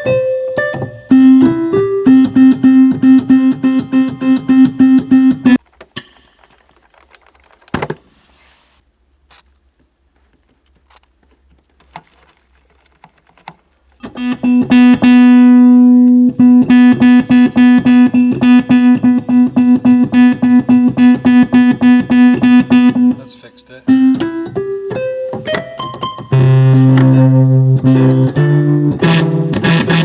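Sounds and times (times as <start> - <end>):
electric keyboard note repeated: 0.0 - 5.6, 14.0 - 30.0.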